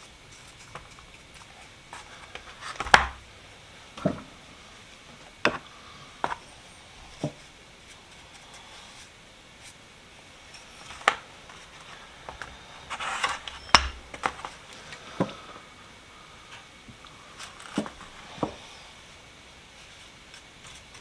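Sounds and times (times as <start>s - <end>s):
brush scraping: 10.5s - 14.6s.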